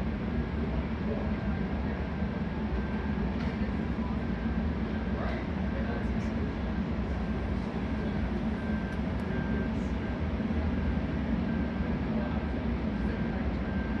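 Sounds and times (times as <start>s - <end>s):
faint high beeps: 8.6s - 10.2s.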